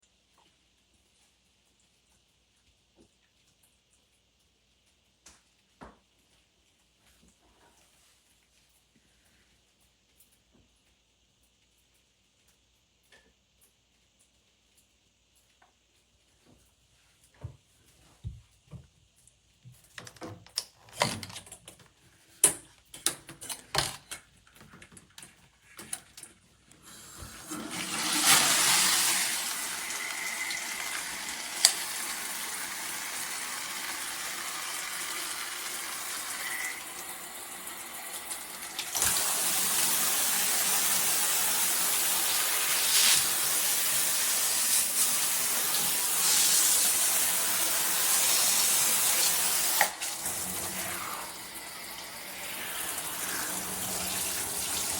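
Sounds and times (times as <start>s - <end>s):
shower water spraying: 26.8s - 54.9s.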